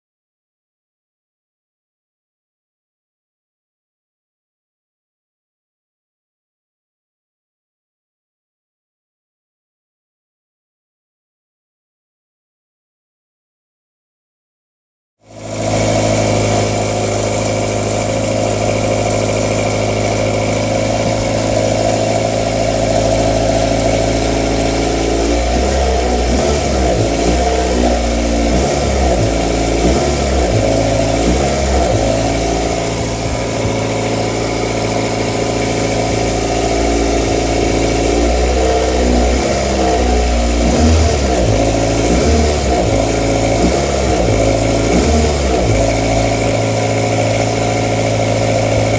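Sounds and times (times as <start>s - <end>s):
steady high whine: 15.3s - 48.9s
car engine idling unevenly: 15.4s - 48.9s.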